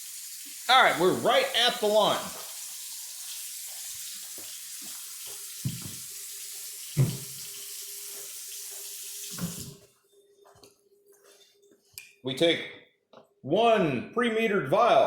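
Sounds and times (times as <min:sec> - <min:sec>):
tap water running into sink: 0:00.0 - 0:09.9.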